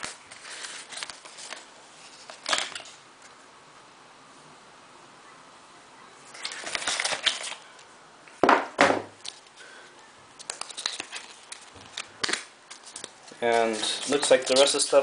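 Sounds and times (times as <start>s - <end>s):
packaging rustling: 0.0s - 3.0s, 6.3s - 7.7s, 10.4s - 15.0s
loud packaging crinkles: 6.3s - 7.7s, 10.4s - 15.0s.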